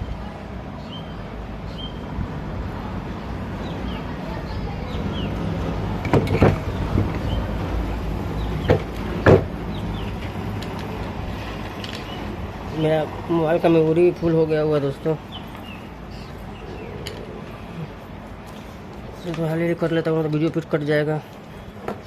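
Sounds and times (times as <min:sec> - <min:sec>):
knocks of fan parts: 0:06.0 - 0:07.3, 0:08.6 - 0:09.6.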